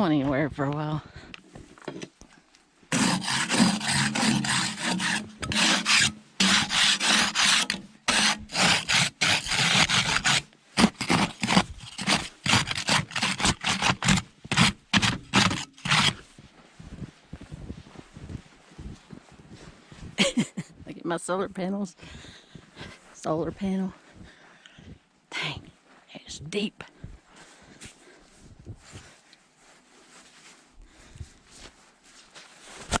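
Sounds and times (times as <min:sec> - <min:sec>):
snow crunching: 0:27.2 - 0:33.0.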